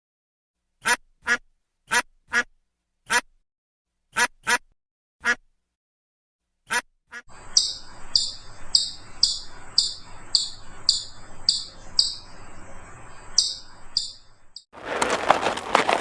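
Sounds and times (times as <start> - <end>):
bird calling: 7.1 - 14.6.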